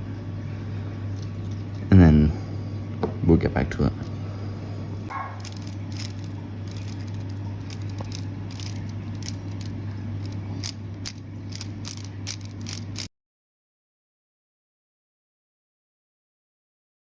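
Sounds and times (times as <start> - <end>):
plastic pieces clicking and rattling: 5.4 - 13.1.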